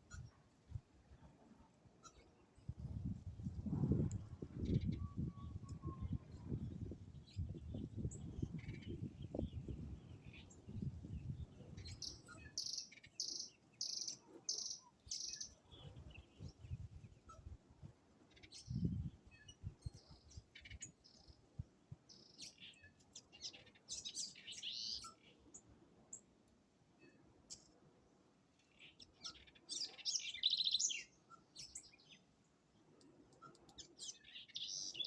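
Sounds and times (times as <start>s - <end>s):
birds chirping: 4.6s - 16.9s, 33.4s - 35.0s.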